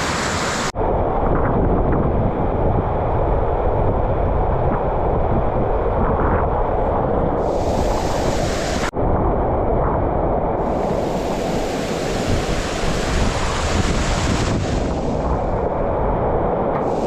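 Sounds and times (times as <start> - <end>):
water rushing: 0.0 - 0.8, 7.4 - 8.9, 10.6 - 15.8.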